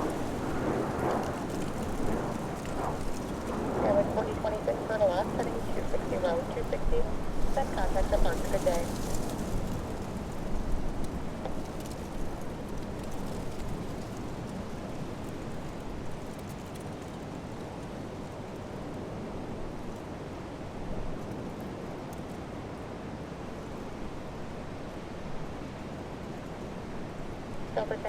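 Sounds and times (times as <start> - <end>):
wind buffeting microphone: 0.0 - 16.4.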